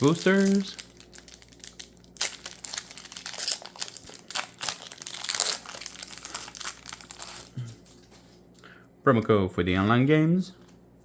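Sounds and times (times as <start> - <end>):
foil wrapper crinkling and tearing: 0.0 - 8.1.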